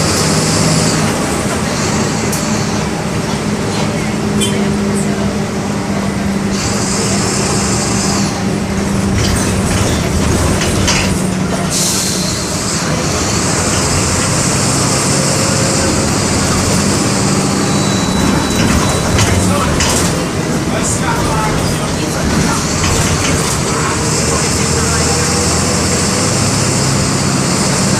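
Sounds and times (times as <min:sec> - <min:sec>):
bus engine running: 0:00.0 - 0:27.9.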